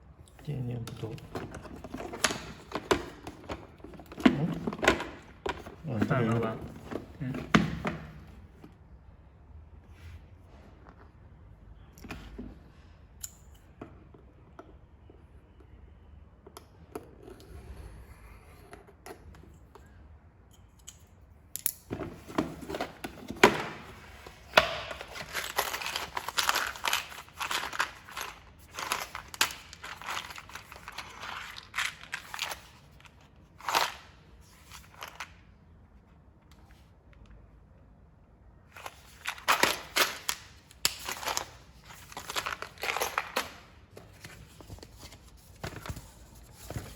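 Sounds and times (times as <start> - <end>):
plastic packaging crinkling: 23.6 - 34.1, 38.8 - 46.9.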